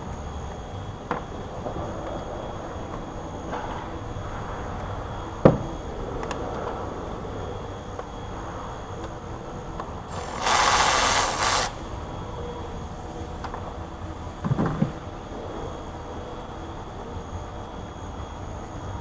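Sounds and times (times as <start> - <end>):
loud hiss: 10.1 - 11.9
workshop background noise: 10.1 - 11.9.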